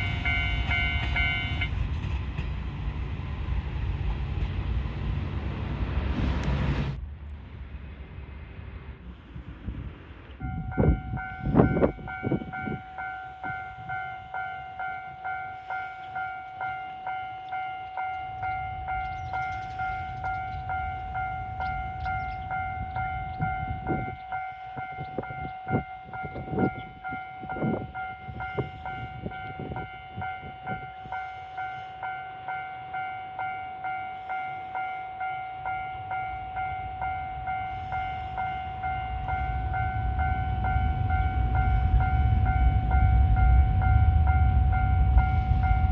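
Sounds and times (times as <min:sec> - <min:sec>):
level-crossing alarm bell: 0:00.0 - 0:01.9, 0:10.4 - 0:45.9
low rumble: 0:38.6 - 0:45.9.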